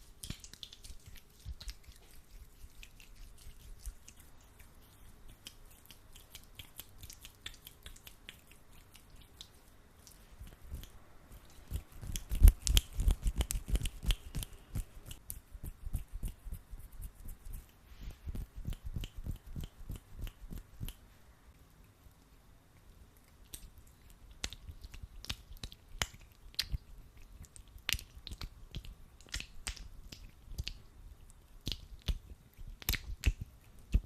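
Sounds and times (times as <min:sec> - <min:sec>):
hands rubbing wet gel: 0:00.0 - 0:21.1.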